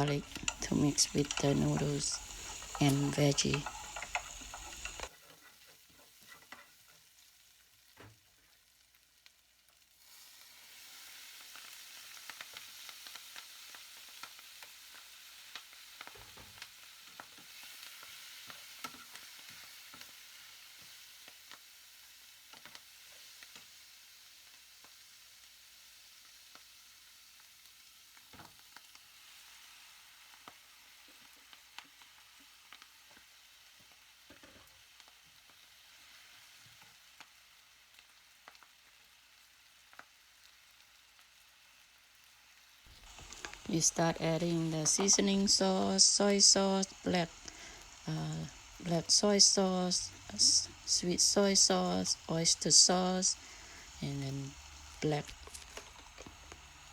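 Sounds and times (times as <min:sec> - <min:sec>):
spatula scraping and tapping: 0:00.0 - 0:06.7, 0:43.0 - 0:43.7
food sizzling in a hot pan: 0:00.0 - 0:56.9.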